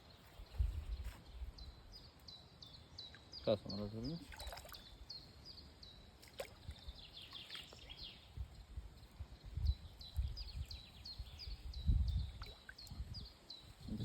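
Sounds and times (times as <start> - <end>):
small bird chirping: 0.0 - 8.5.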